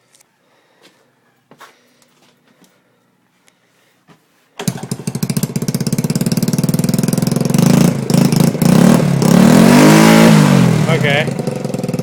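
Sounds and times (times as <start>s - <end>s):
small engine puttering: 4.6s - 12.0s.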